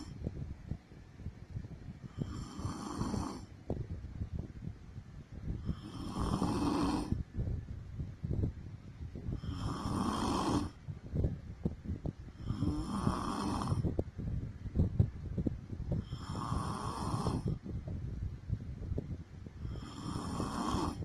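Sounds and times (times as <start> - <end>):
woman snoring: 2.1 - 3.5, 5.6 - 7.2, 9.4 - 10.8, 12.3 - 13.8, 16.0 - 17.6, 19.6 - 21.0.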